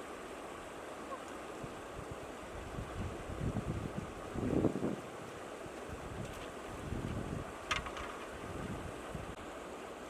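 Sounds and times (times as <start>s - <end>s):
wind buffeting microphone: 1.6s - 9.4s.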